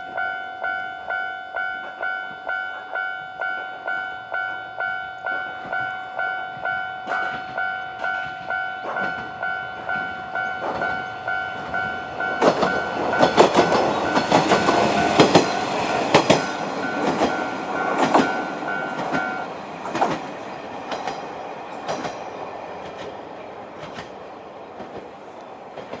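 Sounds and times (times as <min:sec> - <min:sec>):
level-crossing alarm two-tone bell: 0:00.0 - 0:19.7
railcar wheels clacking over rail joints: 0:01.7 - 0:26.0.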